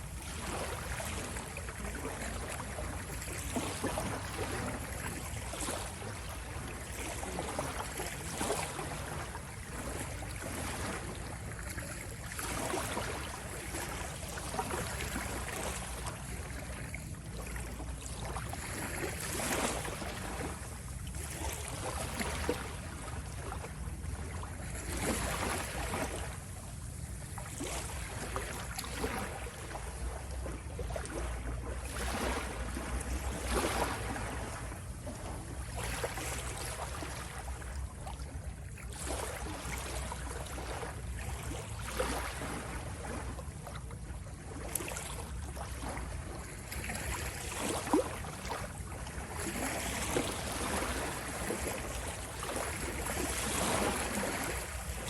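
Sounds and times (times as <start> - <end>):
sea waves washing in: 47.2 - 55.0.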